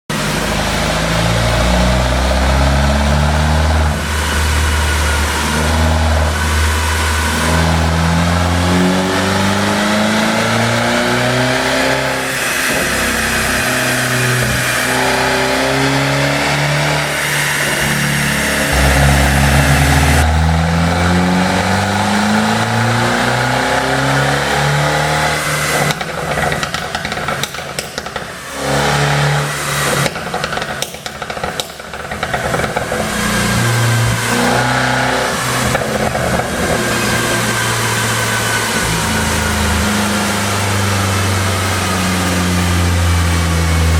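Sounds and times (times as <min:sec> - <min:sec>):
car engine revving: 0:00.1 - 0:43.9
exhaust pops and crackles: 0:18.7 - 0:43.9.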